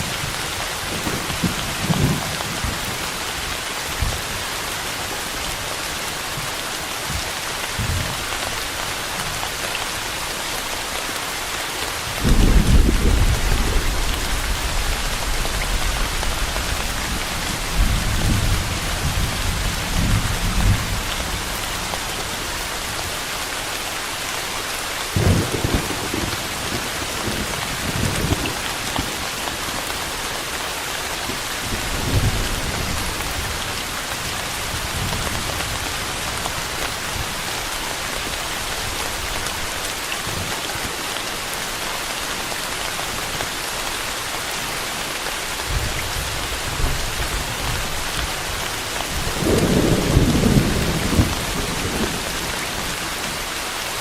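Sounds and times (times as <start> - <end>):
steady rain hiss: 0.0 - 54.0
distant thunder rumbling: 12.2 - 21.0.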